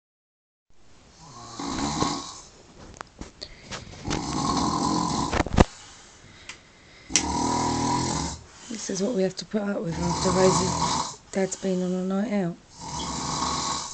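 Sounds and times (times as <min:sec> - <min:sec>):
man snoring heavily: 0:01.2 - 0:02.5, 0:04.0 - 0:05.4, 0:07.0 - 0:08.7, 0:09.9 - 0:11.2, 0:12.7 - 0:13.9.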